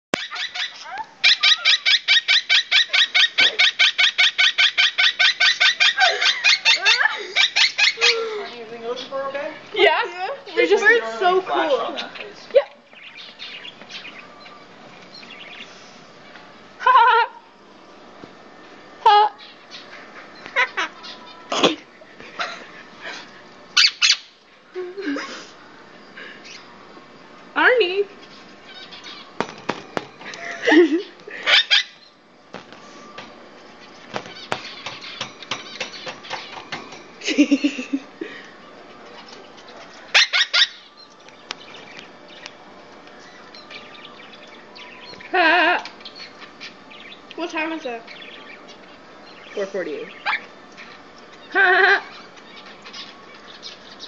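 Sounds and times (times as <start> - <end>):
bird squawking rapidly: 0.2 - 8.2, 23.8 - 24.3, 31.4 - 32.0, 40.1 - 40.9.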